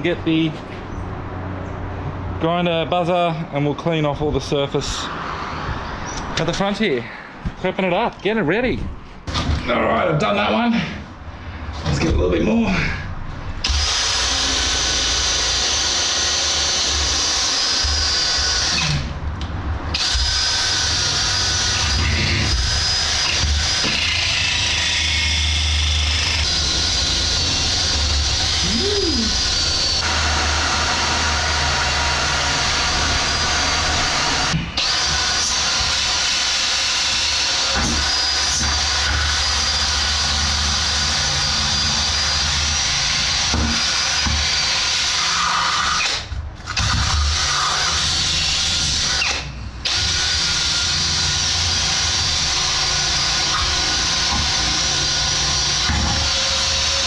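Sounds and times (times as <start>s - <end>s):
angle grinder grinding: 20.0s - 57.0s.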